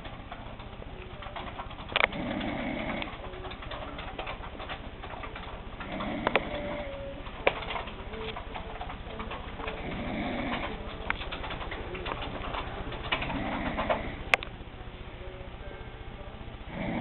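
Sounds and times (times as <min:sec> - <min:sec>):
soft cooing snoring: 0:02.1 - 0:03.2, 0:09.8 - 0:10.8, 0:13.2 - 0:14.3, 0:16.7 - 0:17.0.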